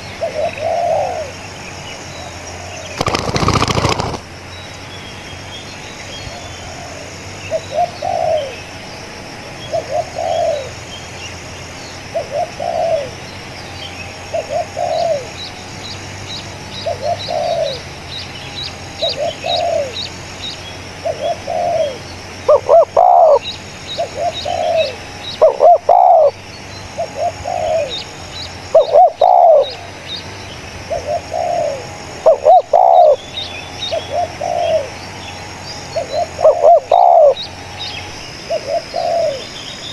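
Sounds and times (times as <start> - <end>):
small birds chirping: 0.0 - 39.9
doves cooing: 0.2 - 1.3, 2.6 - 4.3, 9.7 - 10.8, 12.2 - 13.2, 14.3 - 15.4, 16.8 - 17.8, 21.0 - 23.4, 24.0 - 26.4, 27.0 - 29.9, 30.9 - 33.2, 33.9 - 35.0, 35.9 - 37.4, 38.5 - 39.6.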